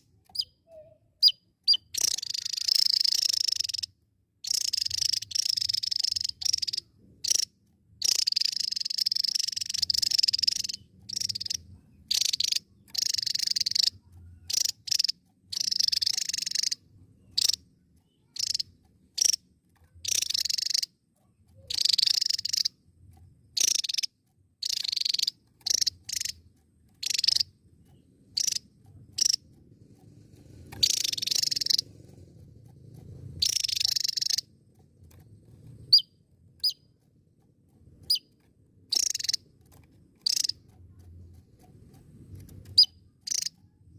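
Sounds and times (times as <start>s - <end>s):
bird singing high-pitched phrases: 0.2s - 19.4s, 20.0s - 22.8s, 23.6s - 26.4s, 27.0s - 28.6s, 33.4s - 34.4s, 38.9s - 39.4s, 42.8s - 43.6s.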